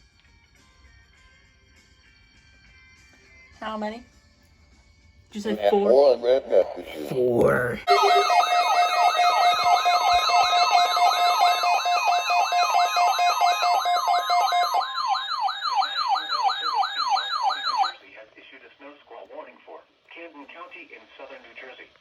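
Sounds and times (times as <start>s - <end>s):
electronic siren wail: 7.9s - 18.0s.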